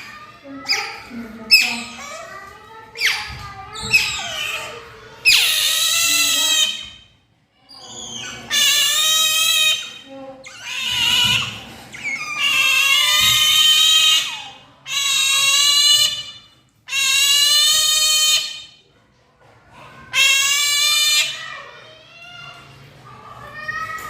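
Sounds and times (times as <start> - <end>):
otter screaming: 3.9 - 6.8, 7.9 - 16.3, 16.9 - 18.6, 20.1 - 21.5.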